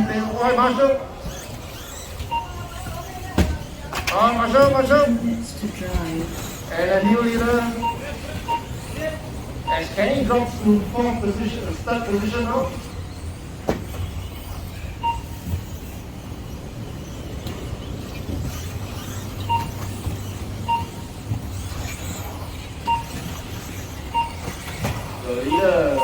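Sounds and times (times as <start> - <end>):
short electronic beeps: 1.3 - 3.3, 6.2 - 12.5, 15.0 - 16.0, 18.9 - 26.0.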